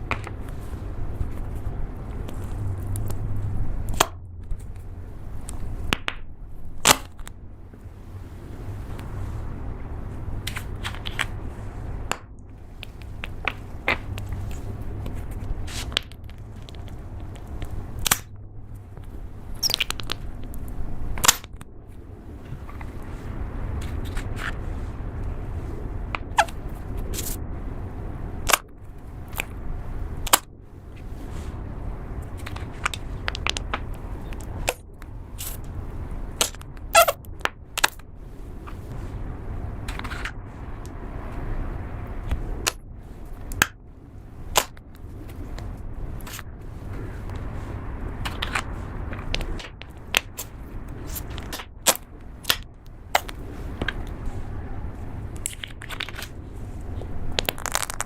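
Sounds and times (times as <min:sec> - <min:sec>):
low steady rumble: 0:00.0 - 0:58.0
slime squeezed with pops: 0:36.4 - 0:37.2, 0:57.4 - 0:58.0.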